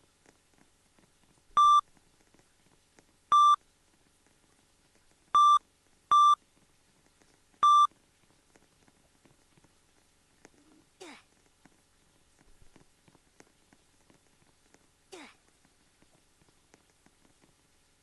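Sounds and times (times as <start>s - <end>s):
microwave oven beeping: 1.6s - 1.8s, 3.3s - 3.6s, 5.4s - 6.4s, 7.6s - 7.9s.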